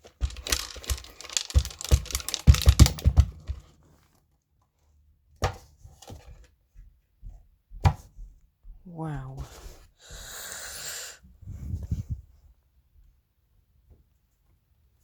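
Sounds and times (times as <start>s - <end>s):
plastic crackling and clicking: 0.0s - 4.2s.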